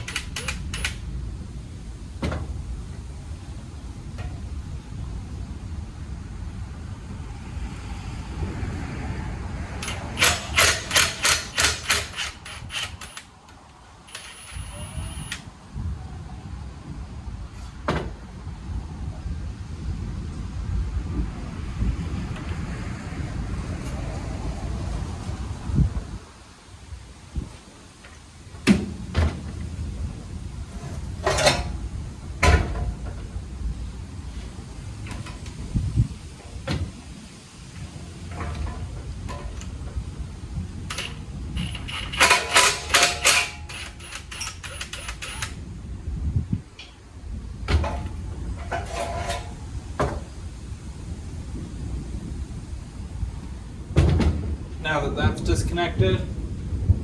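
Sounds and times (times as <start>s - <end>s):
metal tools clanking and knocking: 0.0s - 1.0s, 9.8s - 13.3s, 30.6s - 33.2s, 40.9s - 45.6s, 47.7s - 50.2s
low steady rumble: 0.0s - 57.0s.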